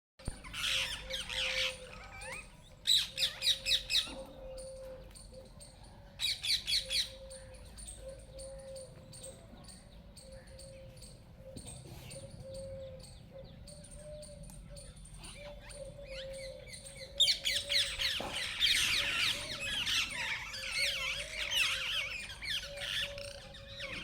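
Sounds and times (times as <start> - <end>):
parrot calling: 0.4 - 4.1, 17.2 - 24.0.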